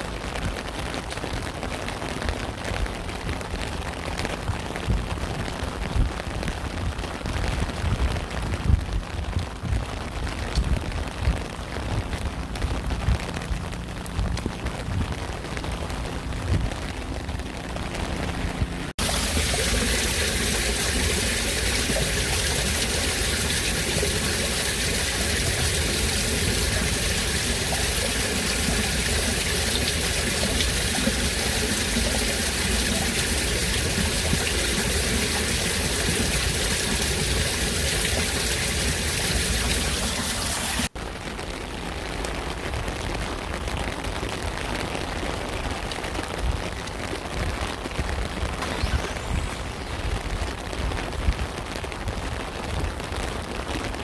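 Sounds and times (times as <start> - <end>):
heavy downpour with pouring water: 0.0 - 54.0
rain: 0.0 - 54.0.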